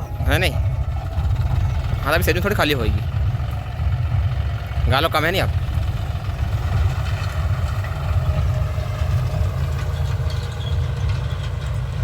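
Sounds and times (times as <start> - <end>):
tractor diesel engine running: 0.0 - 12.0.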